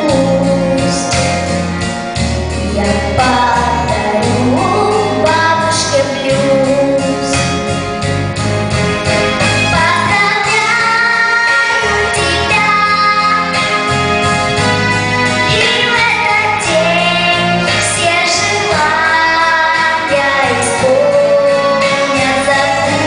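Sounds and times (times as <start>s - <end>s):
instrumental accompaniment with bass: 0.0s - 23.0s.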